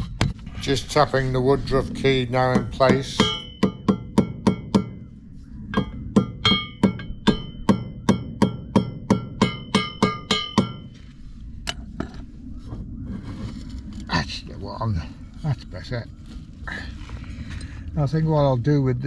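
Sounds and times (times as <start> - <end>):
sharp metallic taps: 2.5 - 4.9, 5.8 - 10.9.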